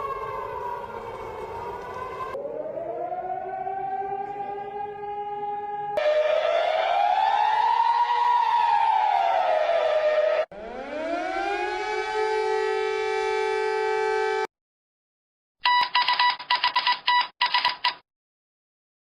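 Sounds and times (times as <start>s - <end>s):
civil defense siren wailing: 0.0s - 14.5s.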